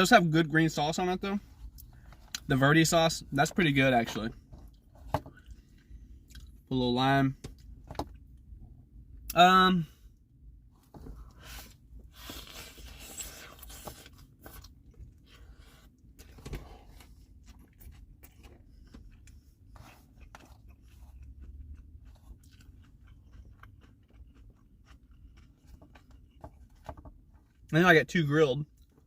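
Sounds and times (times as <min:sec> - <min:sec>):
person chewing crunchy food: 0:11.5 - 0:26.8.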